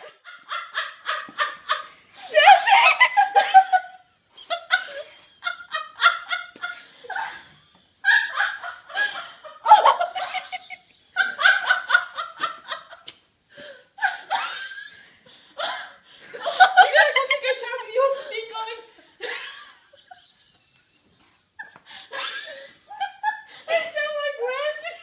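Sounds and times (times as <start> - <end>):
people laughing hard: 0.0 - 13.2, 15.6 - 17.5.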